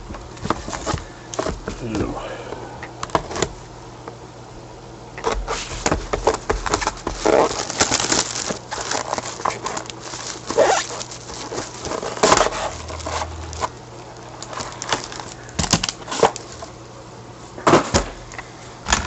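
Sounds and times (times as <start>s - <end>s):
packaging crinkling and rustling: 5.2s - 16.8s.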